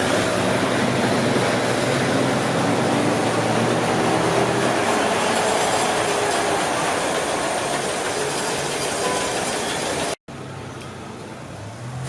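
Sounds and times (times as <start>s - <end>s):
train rumble: 0.0s - 10.2s.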